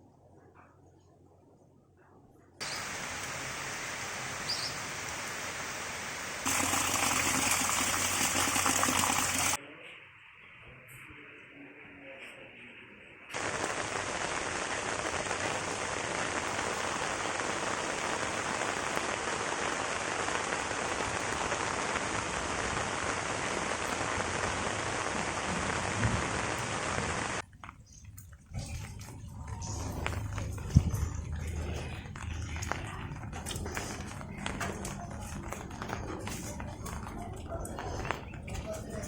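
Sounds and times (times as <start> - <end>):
heavy rain falling: 2.6 - 9.6, 13.4 - 27.4, 29.4 - 39.0.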